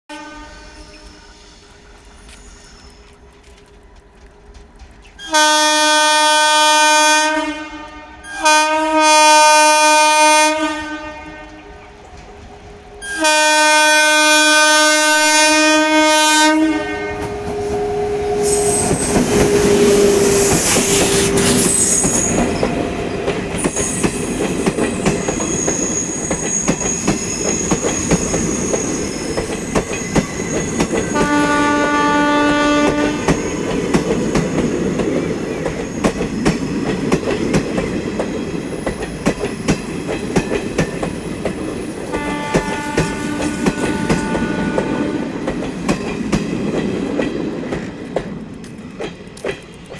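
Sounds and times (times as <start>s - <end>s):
two-tone locomotive horn: 0.1s - 1.4s, 5.2s - 11.9s, 13.0s - 22.7s, 30.8s - 34.0s, 42.0s - 45.5s.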